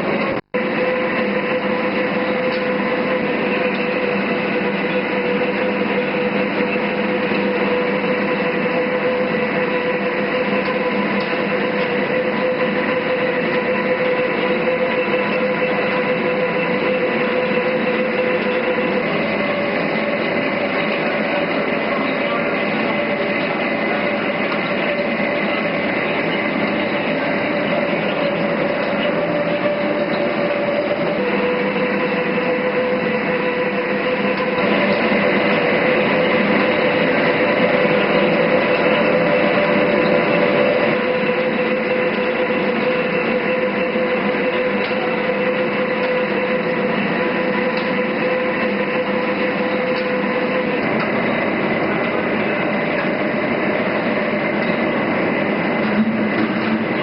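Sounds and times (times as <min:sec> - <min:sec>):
lathe humming with gear whine: 0:00.0 - 0:57.0.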